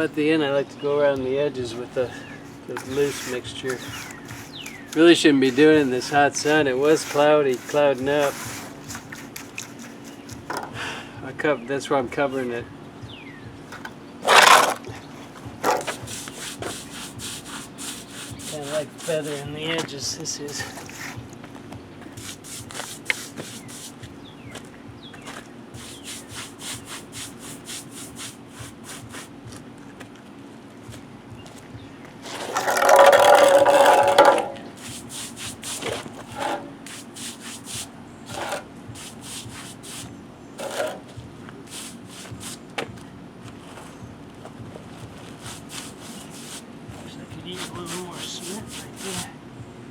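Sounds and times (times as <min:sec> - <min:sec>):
trowel scraping wet cement: 0:02.1 - 0:10.5, 0:14.2 - 0:14.9, 0:15.6 - 0:19.8, 0:20.5 - 0:21.2, 0:22.2 - 0:24.0, 0:25.8 - 0:29.3, 0:32.2 - 0:42.6, 0:45.3 - 0:46.6, 0:47.4 - 0:49.3.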